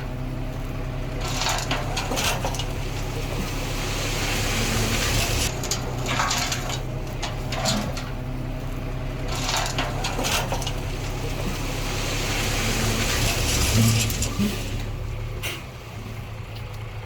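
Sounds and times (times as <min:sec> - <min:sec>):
diesel engine running: 0:00.0 - 0:17.0
gritty scraping: 0:01.2 - 0:08.2, 0:09.2 - 0:15.0.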